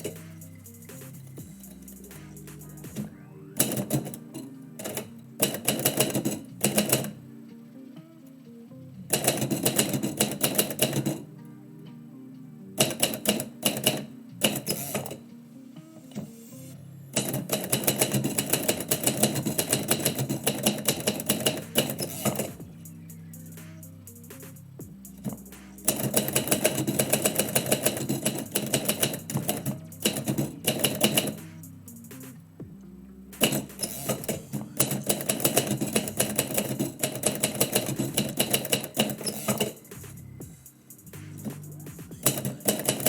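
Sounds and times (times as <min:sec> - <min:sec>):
typewriter keystrokes: 0:00.0 - 0:07.2, 0:09.1 - 0:11.3, 0:12.8 - 0:15.2, 0:17.2 - 0:22.8, 0:25.2 - 0:32.3, 0:33.4 - 0:40.2, 0:41.2 - 0:43.0.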